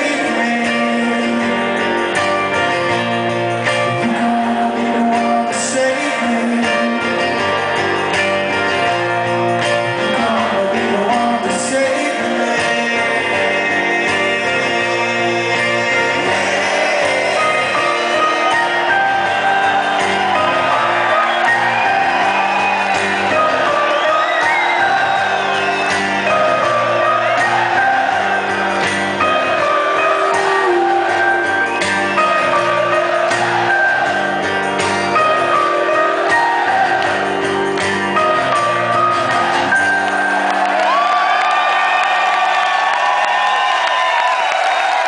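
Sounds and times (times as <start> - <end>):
person singing: 0.0 - 2.9, 3.6 - 7.8, 9.8 - 41.1
guitar: 0.0 - 45.0
live band playing: 0.0 - 45.0
crowd shouting and whooping: 15.2 - 45.0.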